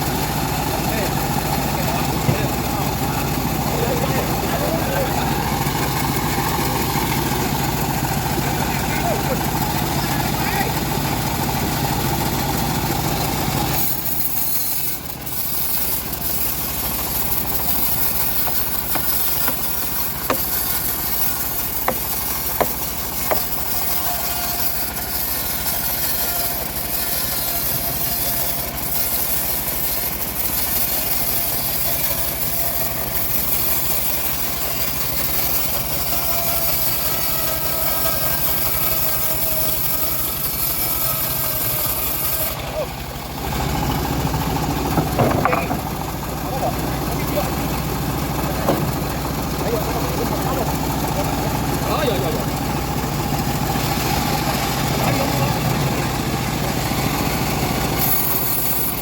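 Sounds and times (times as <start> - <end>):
bandsaw mill engine drone: 0.0 - 59.0
saw hiss: 5.1 - 42.6, 47.4 - 59.0.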